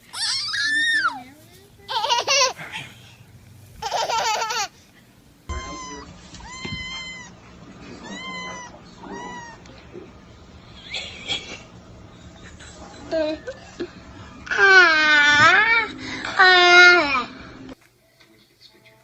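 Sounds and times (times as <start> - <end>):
cat meowing: 5.5 - 7.4, 8.0 - 9.7.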